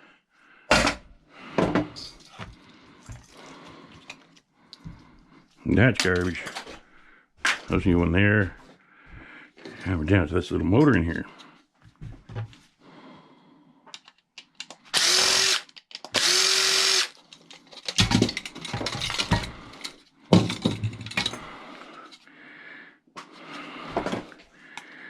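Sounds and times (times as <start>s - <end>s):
power drill backing out screws: 15.0s - 17.2s
metal parts clattering: 17.3s - 21.4s.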